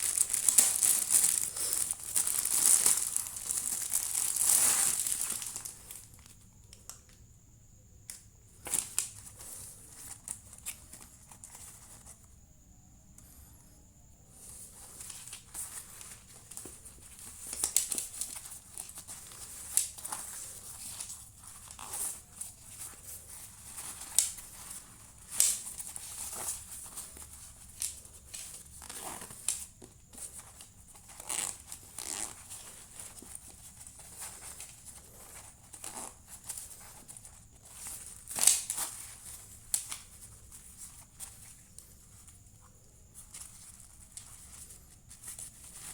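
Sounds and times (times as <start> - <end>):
plastic packaging rustling: 0.0 - 6.9, 14.4 - 45.9
sharp plastic crackles: 0.0 - 7.2, 14.9 - 41.8.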